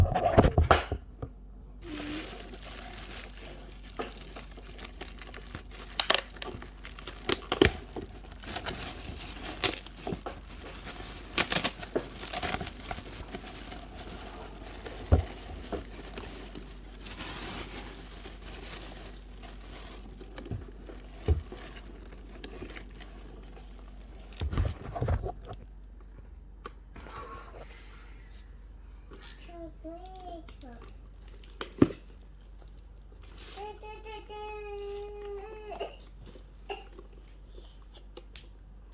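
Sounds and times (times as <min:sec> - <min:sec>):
packaging tearing: 0:01.8 - 0:24.8
packaging crinkling and rustling: 0:01.8 - 0:25.7.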